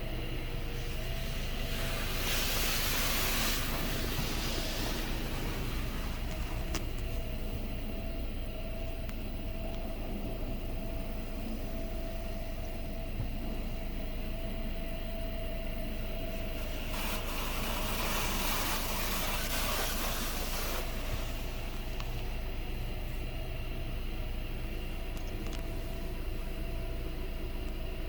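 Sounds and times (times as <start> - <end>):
high-pressure spray hissing on car: 0.0 - 8.0, 16.0 - 23.3
car wash machinery humming: 0.0 - 28.0.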